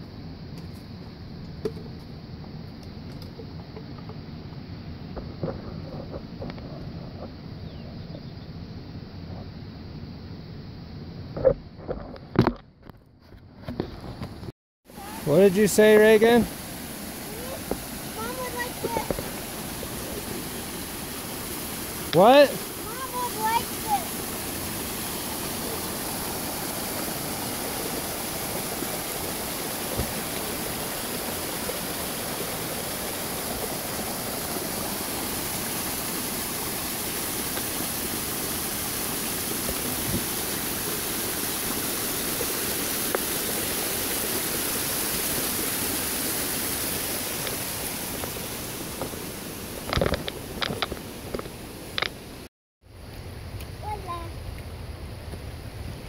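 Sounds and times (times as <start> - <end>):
waterfall rushing: 14.9 - 52.5.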